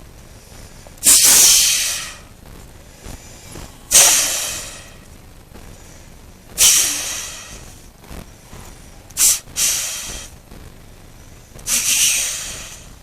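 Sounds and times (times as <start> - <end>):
hissing deer wheeze call: 6.6 - 7.7, 9.2 - 10.3, 11.7 - 13.0.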